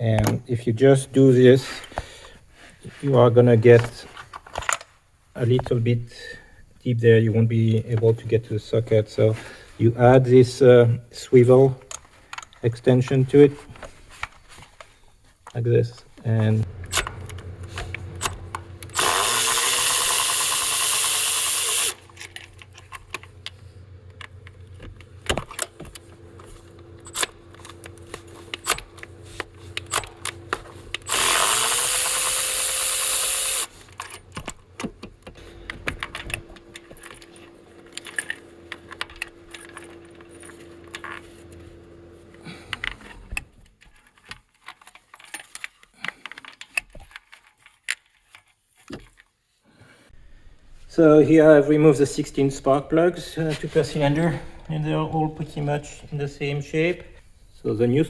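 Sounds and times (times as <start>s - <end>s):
tools clinking and clicking: 3.8s - 4.9s, 11.8s - 41.6s
power ratchet whirring: 16.1s - 43.4s.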